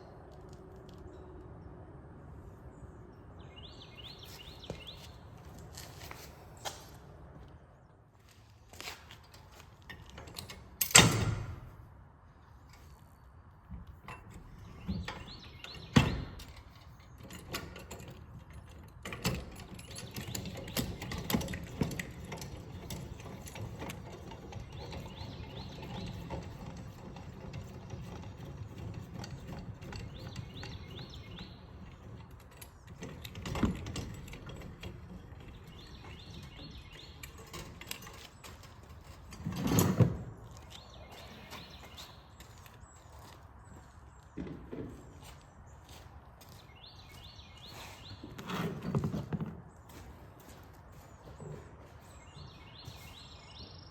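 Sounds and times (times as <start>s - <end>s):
trailer jack ratcheting: 14.1s - 40.2s.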